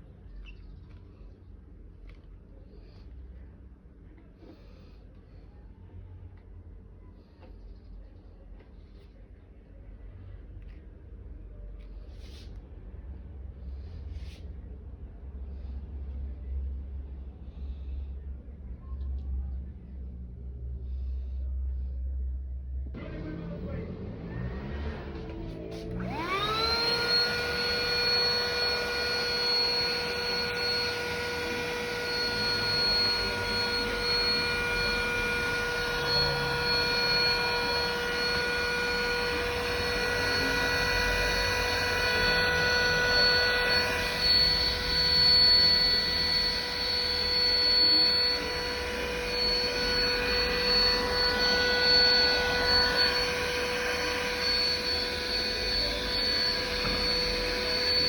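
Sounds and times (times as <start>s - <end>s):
handheld vacuum cleaner running: 25.7s - 58.0s.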